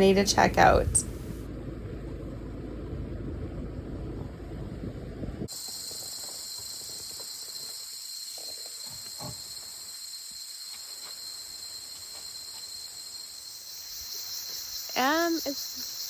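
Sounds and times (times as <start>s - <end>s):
high-pitched insect chorus: 5.5s - 16.0s.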